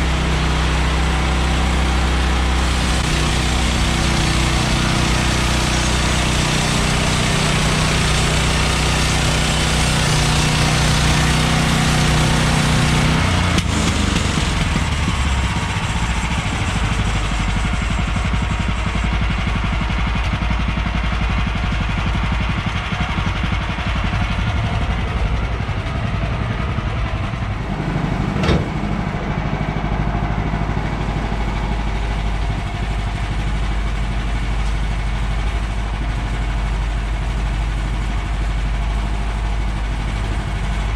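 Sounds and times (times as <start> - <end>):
small gas engine running: 0.0 - 40.9
sharp knock: 28.3 - 29.0.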